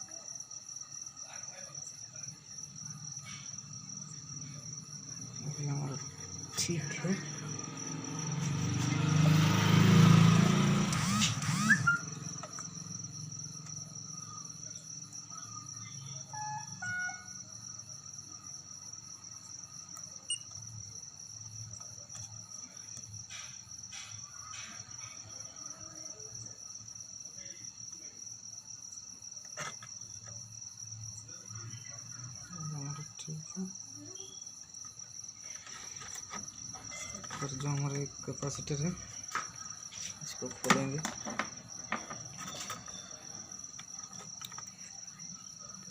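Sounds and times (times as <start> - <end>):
high-pitched insect trilling: 0.0 - 45.9.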